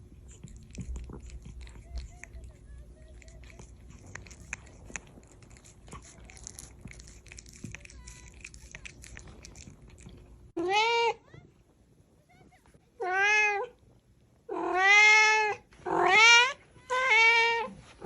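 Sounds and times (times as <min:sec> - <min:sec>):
cat crunching food: 0:00.0 - 0:10.6.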